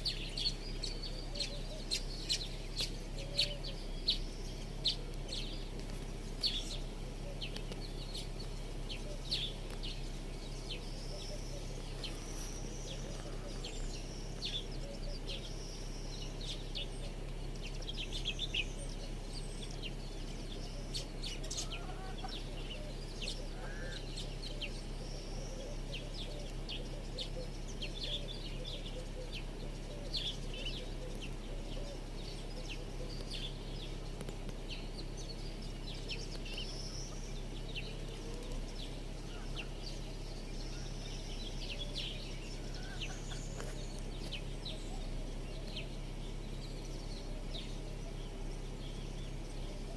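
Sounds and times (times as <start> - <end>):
small birds chirping: 0.0 - 49.9
steady low hum: 0.0 - 49.9.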